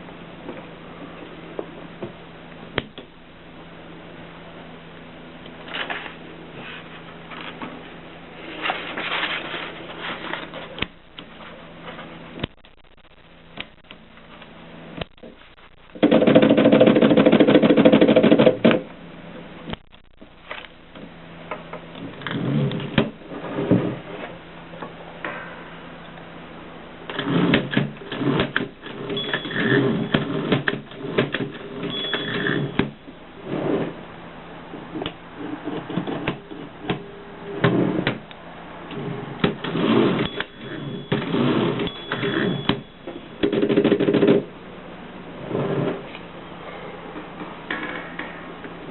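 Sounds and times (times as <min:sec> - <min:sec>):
typewriter rattle: 0:16.0 - 0:18.7
typewriter clacking: 0:16.0 - 0:18.8.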